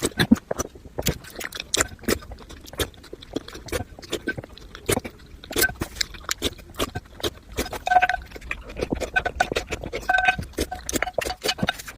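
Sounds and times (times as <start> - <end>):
crunchy chewing: 0.0 - 11.9.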